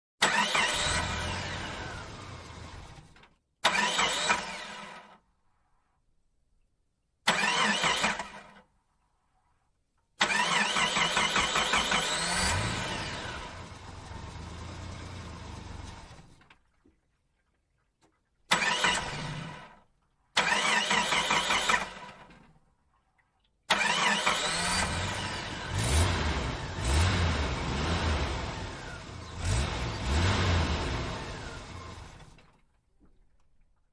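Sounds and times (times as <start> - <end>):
car starter whirring: 0.2 - 5.2, 7.3 - 8.6, 10.2 - 16.5, 18.5 - 19.8, 20.4 - 22.3, 23.7 - 32.6
car engine running and revving: 0.9 - 3.0, 11.8 - 16.4, 24.4 - 32.4.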